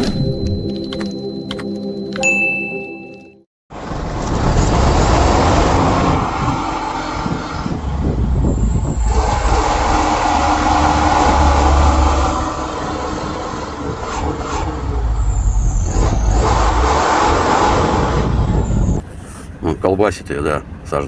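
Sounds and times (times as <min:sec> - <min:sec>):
diesel engine running roughly: 0:03.7 - 0:19.0.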